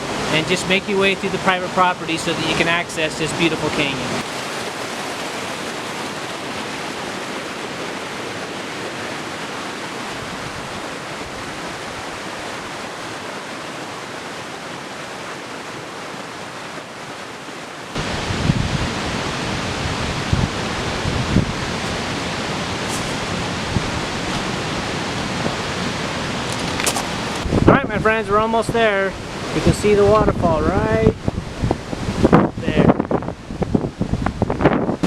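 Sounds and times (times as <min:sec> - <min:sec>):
rushing creek water: 0:00.0 - 0:27.6.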